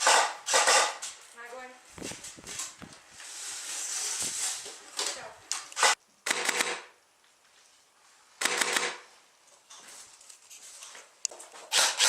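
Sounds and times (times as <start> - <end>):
airsoft gunfire bursts: 0.0 - 1.0, 5.8 - 6.9, 8.4 - 9.1.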